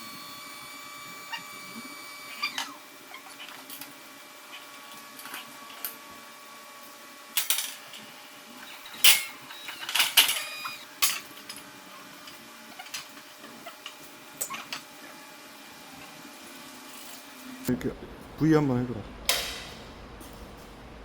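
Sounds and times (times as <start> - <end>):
metal parts and tools clanking: 8.9 - 11.6.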